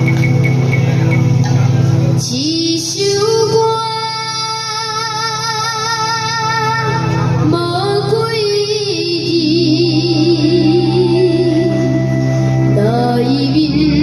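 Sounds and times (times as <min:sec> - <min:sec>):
person singing a ballad: 0:02.2 - 0:14.0
backing track: 0:07.0 - 0:14.0.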